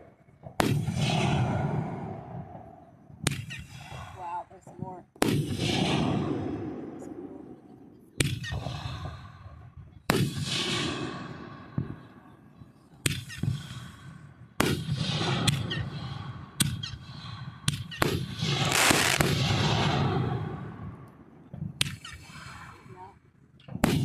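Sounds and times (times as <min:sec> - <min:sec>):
firework bangs: 0:00.0 - 0:04.0, 0:04.8 - 0:07.5, 0:08.2 - 0:12.2, 0:13.0 - 0:23.1, 0:23.7 - 0:24.0
dense firework crackling: 0:13.0 - 0:23.1.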